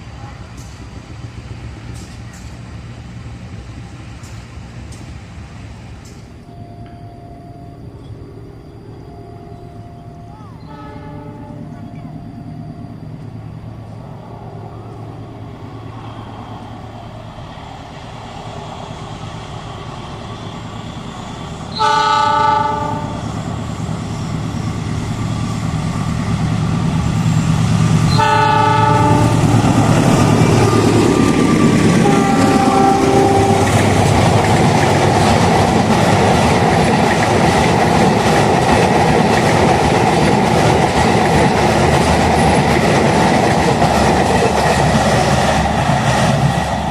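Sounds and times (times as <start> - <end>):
locomotive engine hum: 0.0 - 46.9
train horn blasts: 10.6 - 12.0, 21.7 - 23.3, 28.1 - 29.6, 31.9 - 33.9
wheels clacking over rail joints: 28.1 - 46.9.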